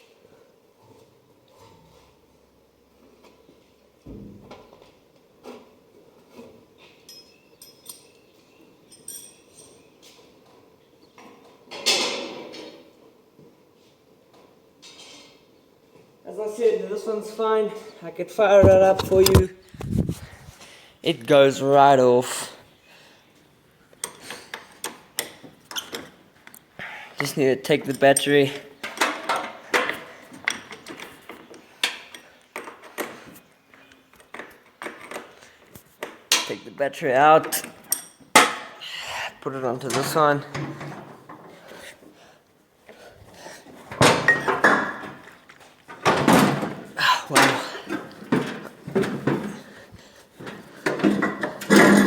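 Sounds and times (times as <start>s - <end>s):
metallic clicks and knocks: 18.6s - 20.0s
small handling clicks and knocks: 18.6s - 20.0s, 27.9s - 36.5s.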